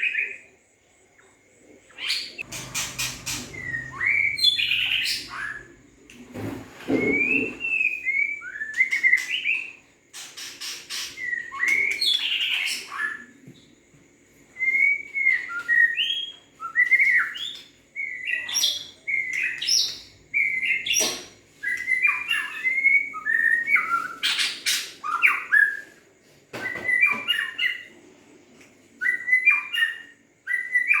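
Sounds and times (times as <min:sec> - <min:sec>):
bird singing whistled phrases: 0:02.1 - 0:05.8, 0:06.9 - 0:09.7, 0:10.9 - 0:13.3, 0:14.6 - 0:21.0, 0:21.6 - 0:24.5, 0:26.6 - 0:27.9, 0:29.0 - 0:31.0.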